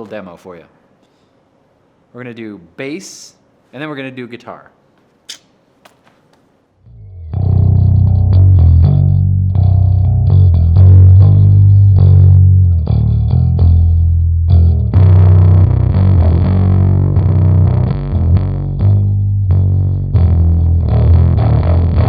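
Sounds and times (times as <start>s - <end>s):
distorted electric bass riff: 6.9s - 22.0s.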